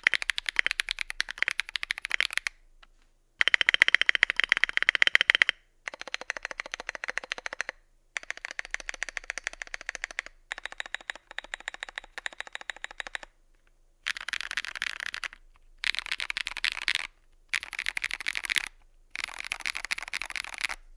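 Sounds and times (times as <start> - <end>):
mechanical keyboard key clacks: 3.4 - 13.3.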